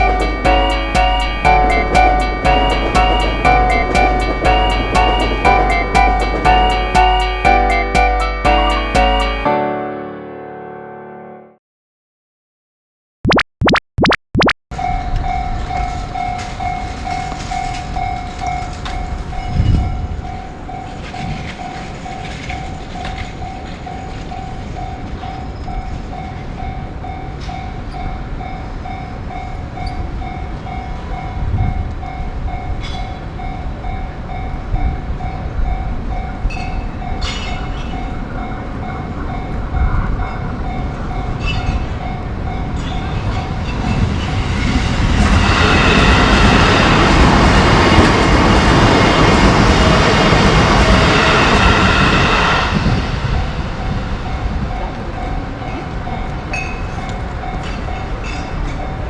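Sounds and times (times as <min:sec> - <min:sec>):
train wheels clacking on rails: 0:00.0 - 0:07.6
level-crossing bell ringing: 0:00.0 - 0:11.5.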